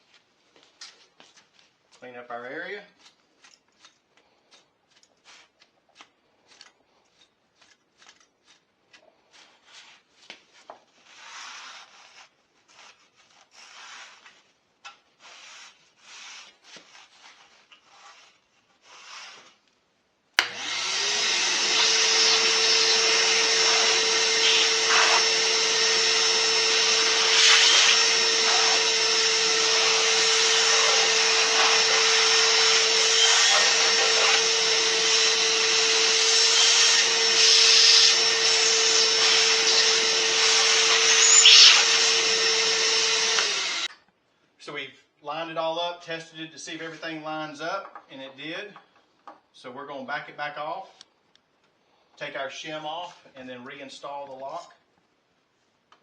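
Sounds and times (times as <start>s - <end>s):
vacuum cleaner running: 20.4s - 43.9s.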